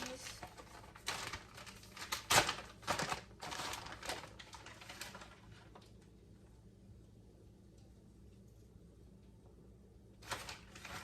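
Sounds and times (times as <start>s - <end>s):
plastic packaging crinkling: 0.0s - 6.1s, 10.2s - 11.0s.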